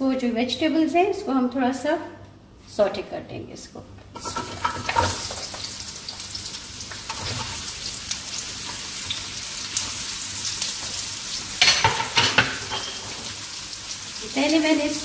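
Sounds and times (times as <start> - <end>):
cabbage sizzling in hot oil: 4.2 - 15.0.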